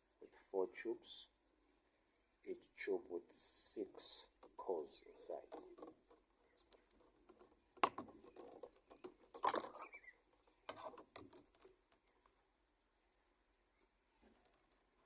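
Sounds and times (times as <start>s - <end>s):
plastic tubes rubbing and clicking: 3.5s - 12.4s.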